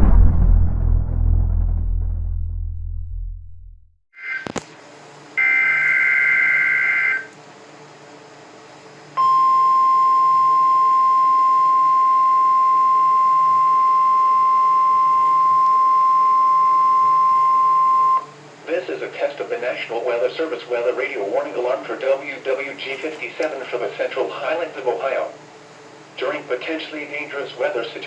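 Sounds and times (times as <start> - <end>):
steady alarm tone: 5.4 - 7.3.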